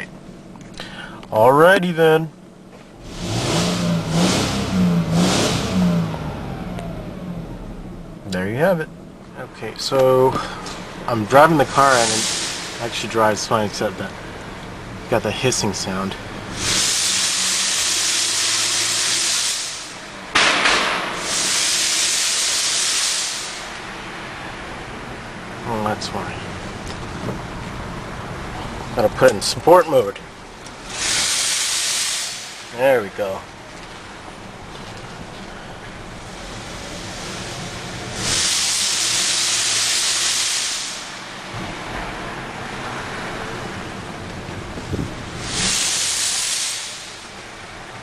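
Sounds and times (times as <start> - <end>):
car engine running: 0.0 - 48.0
exhaust gas hissing: 0.0 - 48.0
sudden loud burst of noise: 16.5 - 24.0, 30.8 - 32.8, 36.3 - 41.8, 44.9 - 47.2.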